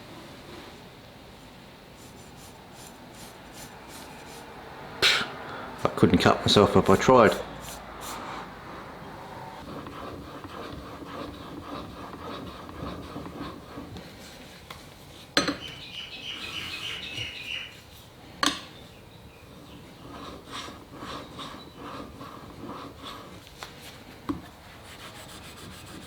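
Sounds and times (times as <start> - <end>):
faint rubbing and fiddling: 0.0 - 4.6, 19.5 - 26.0.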